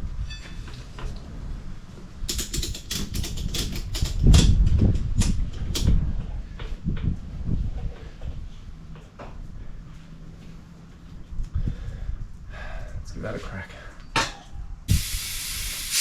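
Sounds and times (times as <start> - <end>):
ratchet strap clicking: 2.3 - 4.5
steady low hum: 4.2 - 16.0.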